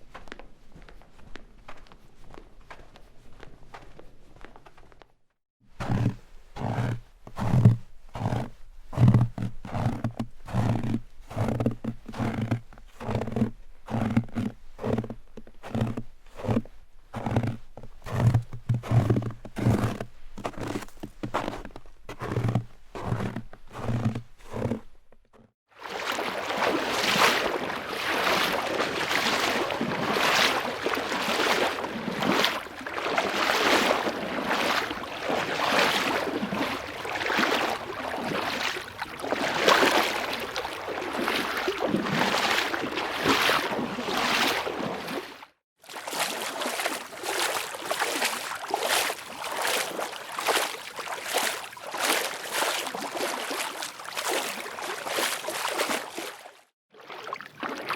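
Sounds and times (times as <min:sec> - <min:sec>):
quick noisy footsteps: 0:45.8 - 0:56.4
heavy footsteps: 0:45.9 - 0:56.3.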